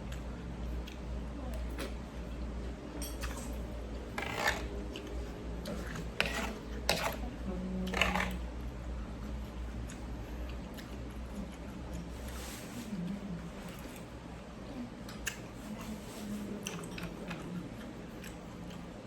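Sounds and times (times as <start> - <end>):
steady low hum: 0.0 - 19.0
utensils clinking against bowl: 3.0 - 4.7, 5.7 - 7.2.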